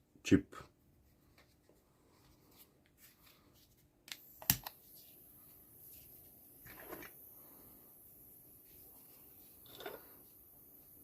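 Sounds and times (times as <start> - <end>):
torch igniter clicks: 4.1 - 4.8.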